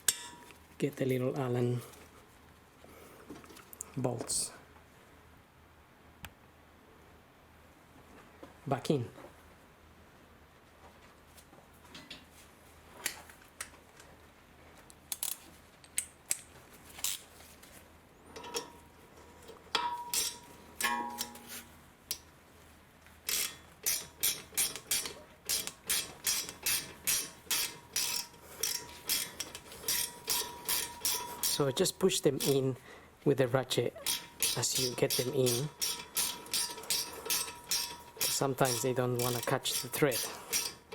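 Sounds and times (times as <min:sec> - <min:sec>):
metal taps and clinks: 0:00.0 - 0:00.6, 0:18.4 - 0:18.8, 0:19.7 - 0:21.6, 0:34.1 - 0:40.8
socket ratchet clicking: 0:23.3 - 0:31.7, 0:34.0 - 0:40.9.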